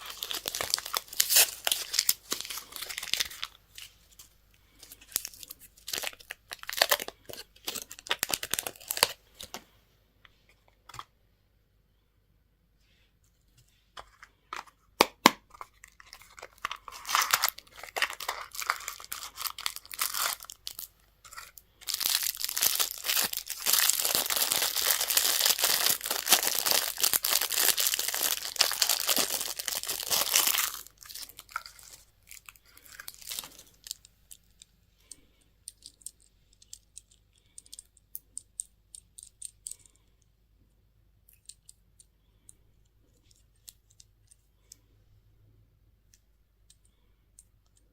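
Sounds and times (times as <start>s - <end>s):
packaging tearing and crinkling: 0.0s - 3.6s, 4.8s - 9.6s, 15.5s - 34.4s.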